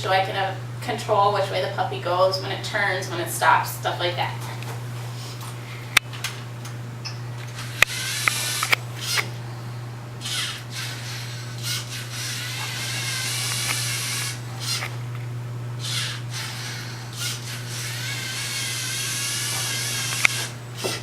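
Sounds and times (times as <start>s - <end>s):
sharp clicks: 6.0s - 9.3s, 20.0s - 20.5s
robot motors and gears whirring: 7.6s - 9.3s, 10.2s - 15.0s, 15.8s - 21.0s.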